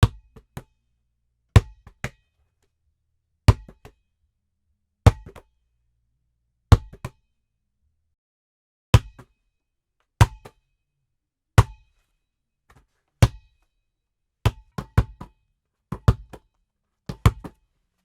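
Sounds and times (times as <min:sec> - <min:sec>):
basketball bouncing on hard floor: 0:03.5 - 0:04.0, 0:05.1 - 0:05.4, 0:06.7 - 0:07.2, 0:14.5 - 0:15.3, 0:15.9 - 0:16.4, 0:17.1 - 0:17.6.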